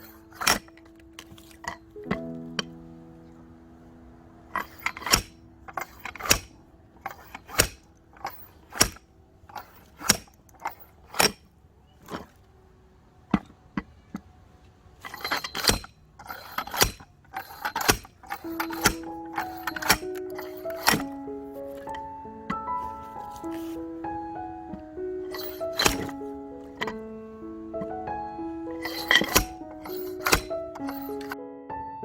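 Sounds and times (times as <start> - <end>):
axe chopping firewood: 7.1 - 9.0, 9.6 - 11.5, 15.5 - 21.2.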